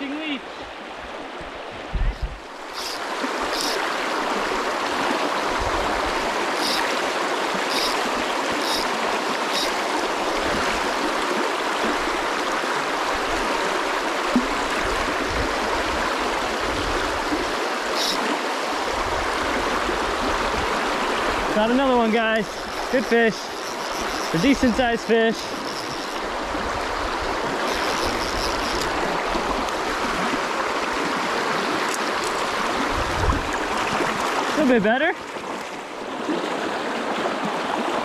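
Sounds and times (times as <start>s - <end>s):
creek water rushing: 0.0s - 38.0s
high chirps: 6.6s - 6.8s, 7.7s - 8.0s, 8.6s - 8.9s, 9.5s - 9.8s.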